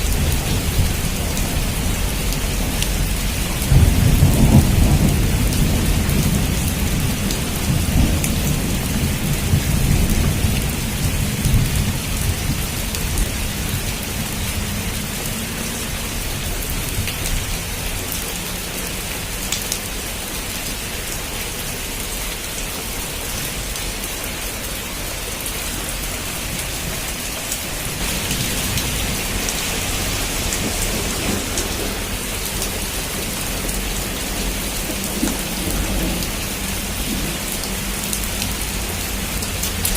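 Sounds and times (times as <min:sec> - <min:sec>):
low thunder rumble: 0:00.0 - 0:18.0, 0:25.6 - 0:39.0
heavy rain on a roof: 0:00.0 - 0:39.9.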